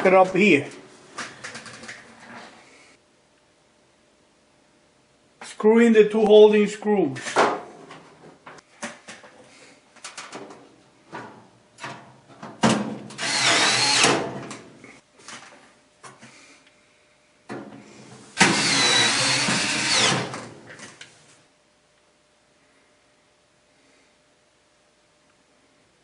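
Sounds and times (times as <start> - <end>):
power drill driving screws: 13.2 - 14.2, 18.4 - 20.5.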